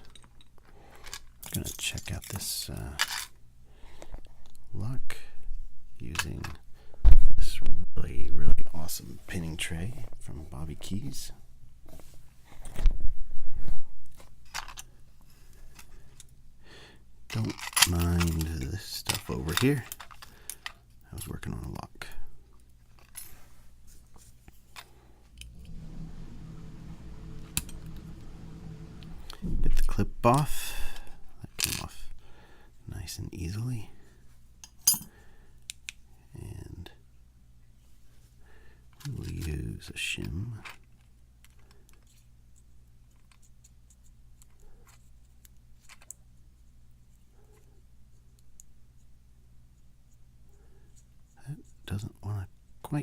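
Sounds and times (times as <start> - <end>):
steady low hum: 25.2 - 32.5.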